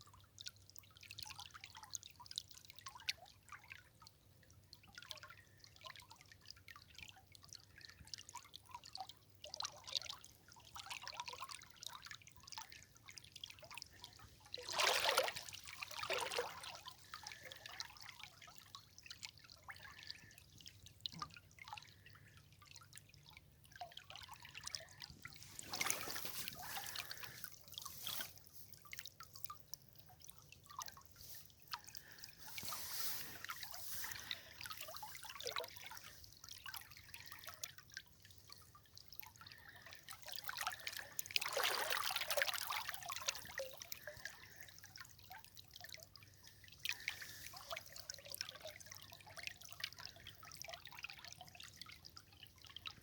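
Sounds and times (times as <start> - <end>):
river water trickling: 0.0 - 53.0
water splashing: 13.8 - 17.8, 24.8 - 29.0, 31.0 - 36.3, 40.5 - 43.6.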